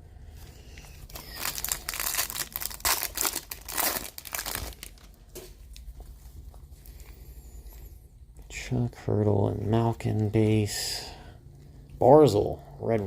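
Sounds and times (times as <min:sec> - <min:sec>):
foil wrapper tearing and crinkling: 0:01.1 - 0:05.1.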